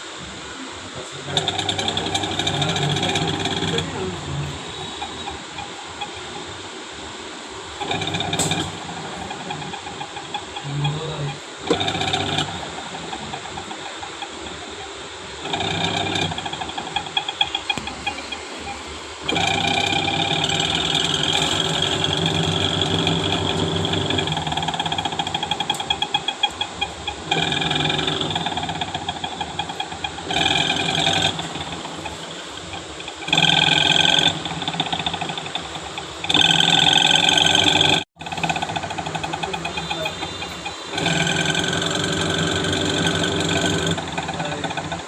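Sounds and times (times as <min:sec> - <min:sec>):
washing machine spinning: 0:00.0 - 0:45.0.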